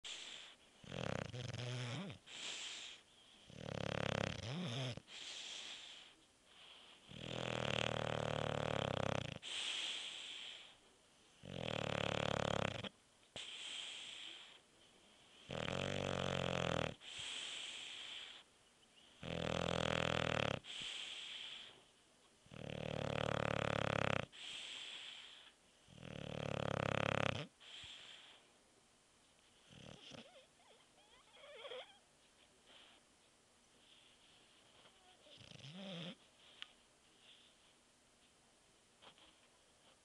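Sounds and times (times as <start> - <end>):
quiet dog breaths: 0.0 - 3.7, 4.4 - 7.3, 9.3 - 11.4, 16.9 - 19.2, 20.6 - 22.5, 24.2 - 26.0, 27.5 - 28.6, 31.3 - 40.0
dog snoring: 0.1 - 10.8, 11.4 - 14.6, 15.4 - 18.4, 19.2 - 21.8, 22.4 - 28.4, 29.6 - 32.0, 35.0 - 36.2.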